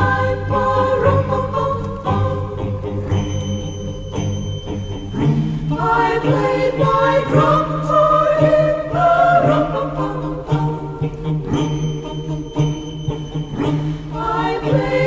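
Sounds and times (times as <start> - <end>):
choir singing sustained notes: 0.0 - 15.0
bell-like chime: 3.1 - 6.6, 11.5 - 15.0.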